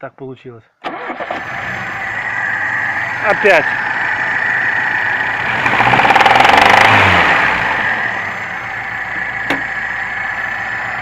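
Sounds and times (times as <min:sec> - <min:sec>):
car engine revving: 0:01.0 - 0:11.0
engine knocking: 0:05.6 - 0:07.6.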